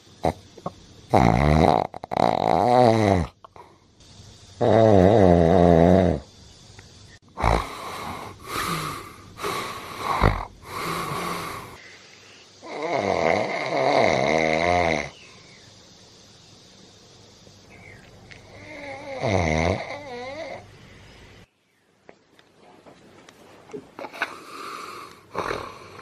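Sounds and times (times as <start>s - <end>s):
man snoring: 1.1s - 3.4s, 4.6s - 6.3s, 7.4s - 11.8s, 12.6s - 15.2s, 18.5s - 20.6s, 24.3s - 26.0s.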